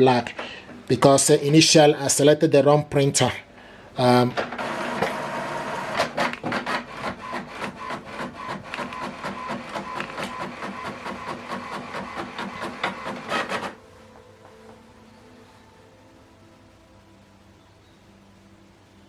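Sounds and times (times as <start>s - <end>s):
inkjet printer printing: 4.3s - 13.8s.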